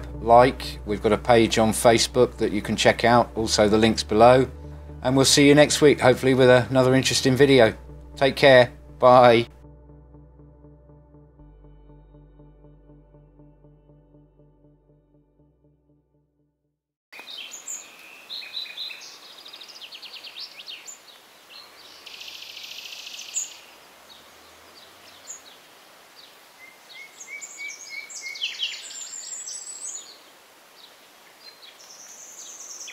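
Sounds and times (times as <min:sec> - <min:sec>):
faint steady hiss: 0:17.2 - 0:32.9
small birds chirping and trilling: 0:17.2 - 0:32.9.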